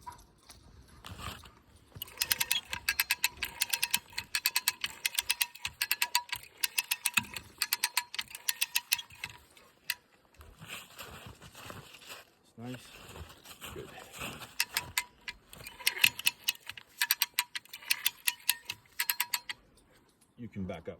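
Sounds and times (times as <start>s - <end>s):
ratchet pawl clicking: 2.0s - 10.0s, 14.5s - 19.6s.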